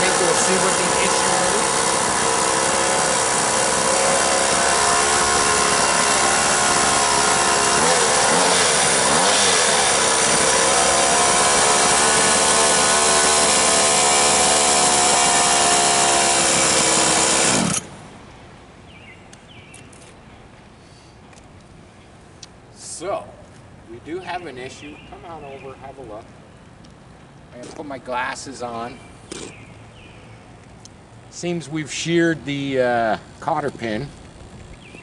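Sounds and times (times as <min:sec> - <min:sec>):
small two-stroke engine running: 0:00.0 - 0:17.9, 0:31.2 - 0:35.0.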